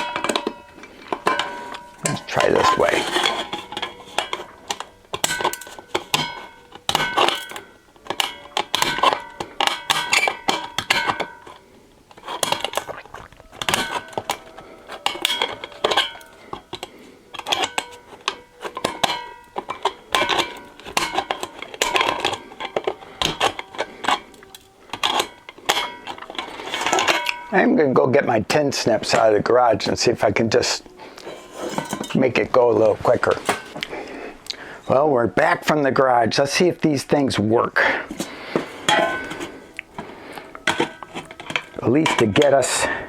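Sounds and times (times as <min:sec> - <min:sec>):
metal bin ringing: 0:00.0 - 0:11.6, 0:13.5 - 0:27.9, 0:38.7 - 0:39.6.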